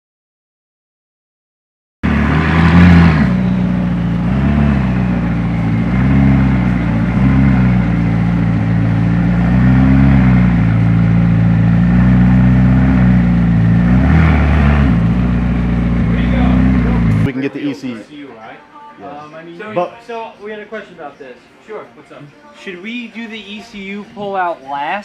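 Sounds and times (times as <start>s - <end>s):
car engine revving: 2.0s - 17.3s.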